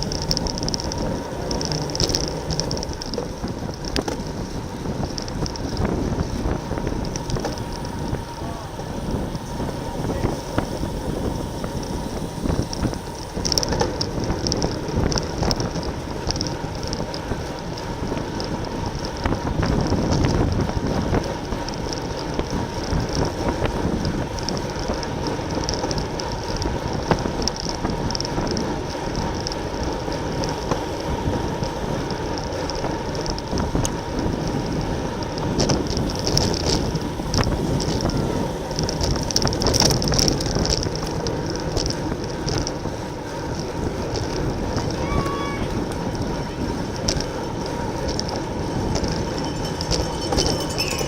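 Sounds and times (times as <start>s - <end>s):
bicycle road noise: 0.0s - 51.0s
wind rushing over microphone: 0.0s - 51.0s.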